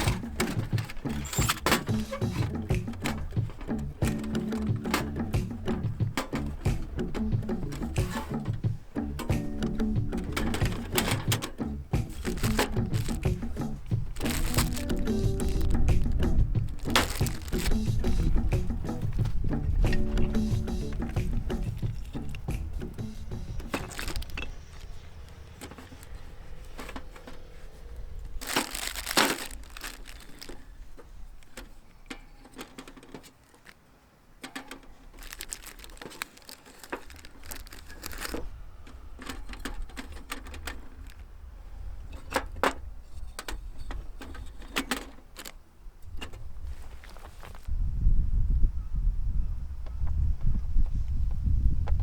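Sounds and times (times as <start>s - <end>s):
crinkling and rustling: 0.0s - 47.7s
low rumble: 11.8s - 30.2s.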